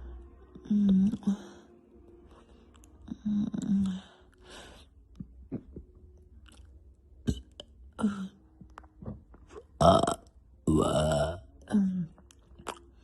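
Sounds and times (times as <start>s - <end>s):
woman breathing: 0.0s - 5.0s
woman's mouth clicks and smacks: 12.2s - 12.9s.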